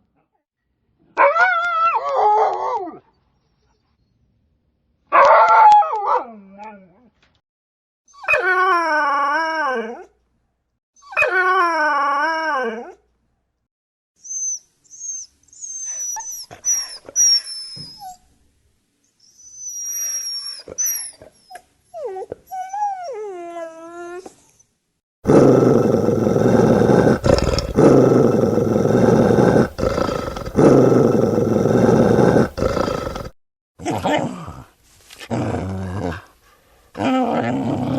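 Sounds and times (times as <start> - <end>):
dog whining: 14.2 - 18.2, 19.2 - 24.7, 25.3 - 33.4
dog growling: 25.3 - 33.4, 37.0 - 37.9.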